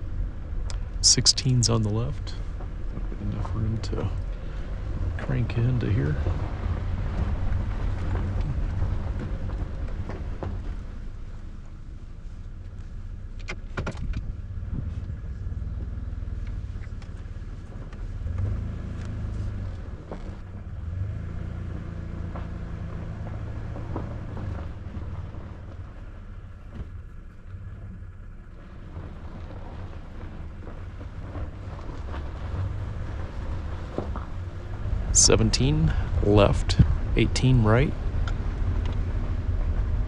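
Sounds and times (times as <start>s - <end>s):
car engine and road rumble: 0.0s - 40.0s.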